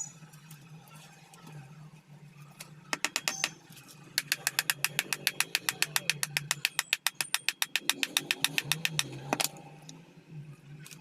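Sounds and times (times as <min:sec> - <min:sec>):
low steady hum: 0:00.0 - 0:11.0
rapid mechanical clicking: 0:02.9 - 0:09.6.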